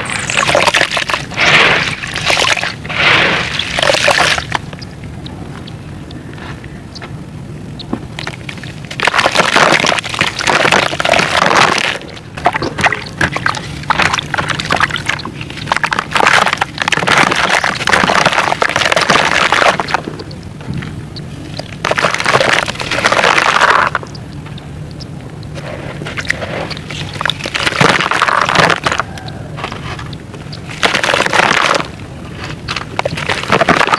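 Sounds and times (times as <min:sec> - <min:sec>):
sand-cement crunching and scraping: 0:00.0 - 0:04.7, 0:08.1 - 0:20.2, 0:21.6 - 0:24.1, 0:25.5 - 0:33.9.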